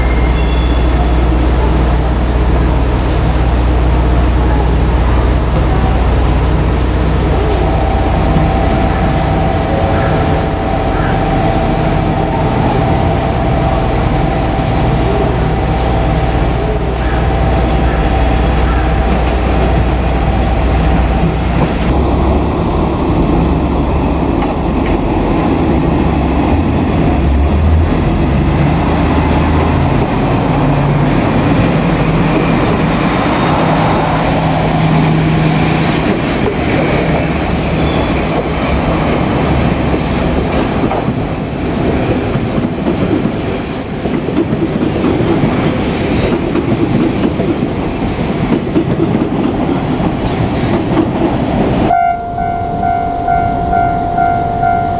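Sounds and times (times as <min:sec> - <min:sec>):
train wheels rumbling: 0:00.0 - 0:54.9
high wheel squeal: 0:34.9 - 0:38.9, 0:40.4 - 0:48.4.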